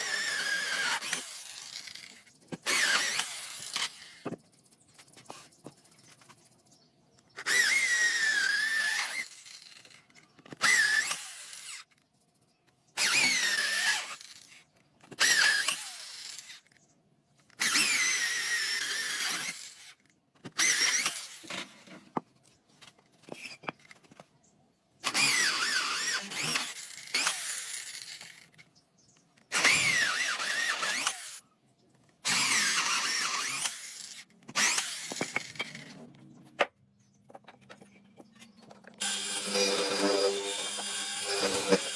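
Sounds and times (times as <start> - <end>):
power tool squealing on wood: 38.3 - 41.9.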